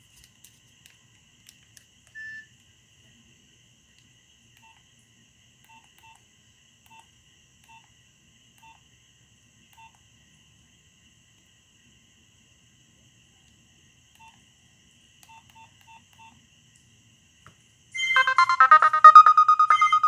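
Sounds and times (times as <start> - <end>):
phone keypad beeps: 18.0 - 20.0.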